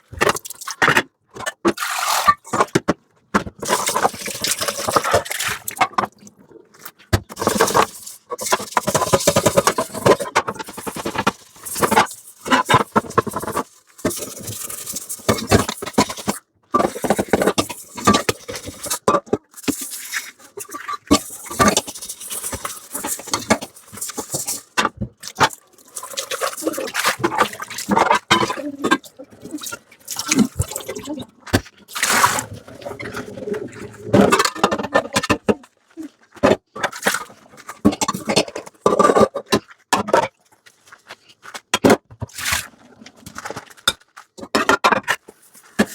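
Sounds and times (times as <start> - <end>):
water splashing and running: 7.4 - 34.8.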